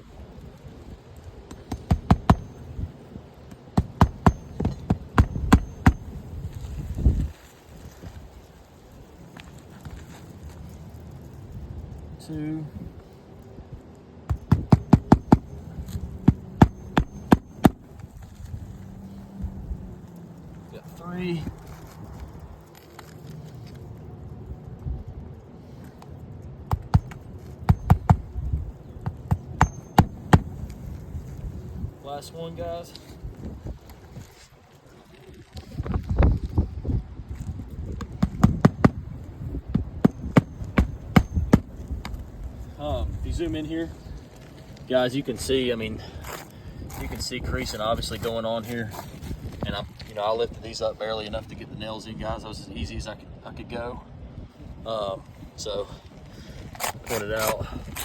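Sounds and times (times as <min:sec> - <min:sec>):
low wind rumble: 0:00.0 - 0:58.0
hammer striking roofing nail: 0:01.5 - 0:02.6, 0:03.8 - 0:06.1, 0:14.3 - 0:15.5, 0:16.2 - 0:17.8, 0:26.7 - 0:28.2, 0:29.0 - 0:30.5, 0:38.0 - 0:39.0, 0:39.8 - 0:41.7.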